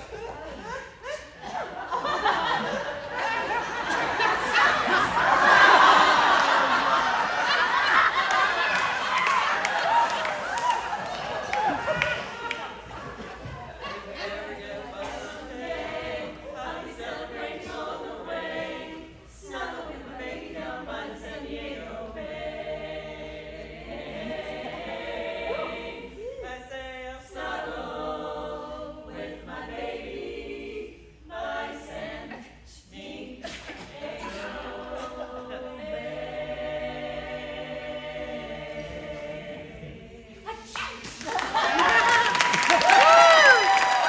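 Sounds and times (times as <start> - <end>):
women singing close harmony: 0.0 - 44.0.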